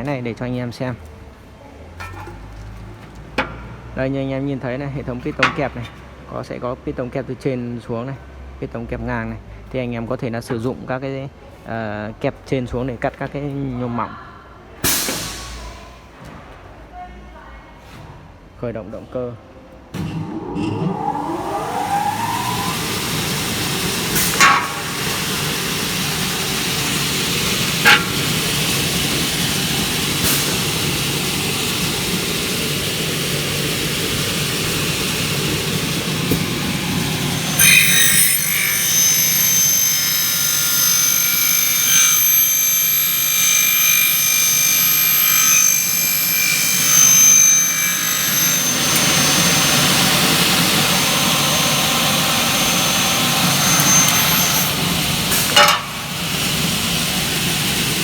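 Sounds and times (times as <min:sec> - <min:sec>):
saw motors spinning: 0:20.0 - 0:58.0
saw blade screeching through metal: 0:20.2 - 0:29.6, 0:36.3 - 0:56.5.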